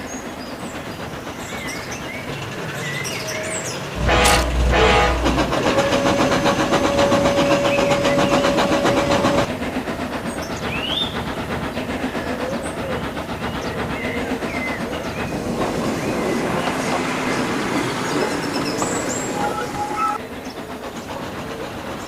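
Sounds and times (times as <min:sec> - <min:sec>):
steam locomotive chuffing: 0:00.0 - 0:22.0
rail clatter: 0:03.9 - 0:09.6
steady tone: 0:04.0 - 0:07.2.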